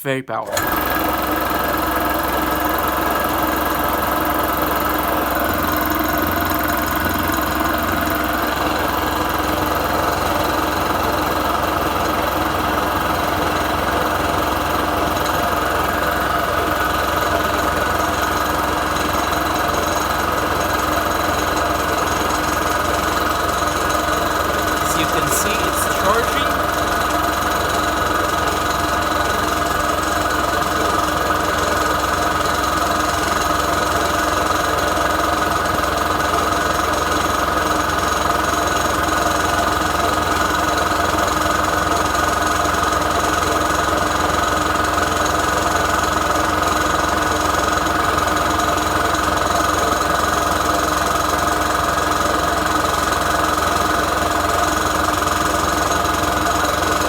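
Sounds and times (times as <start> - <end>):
electric air compressor running: 0.5 - 10.9.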